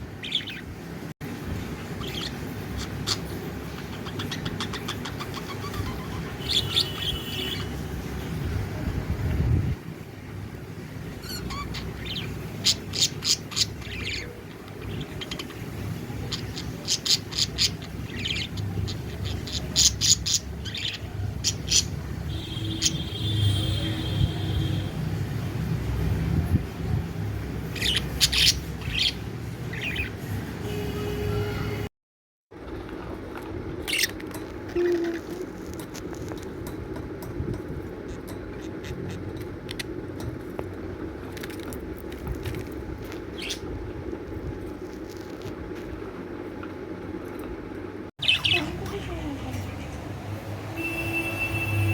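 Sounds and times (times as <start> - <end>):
budgerigars chirping: 0.2 - 0.7, 1.9 - 7.8, 11.2 - 22.1, 27.6 - 30.2, 43.3 - 43.7, 48.2 - 49.1.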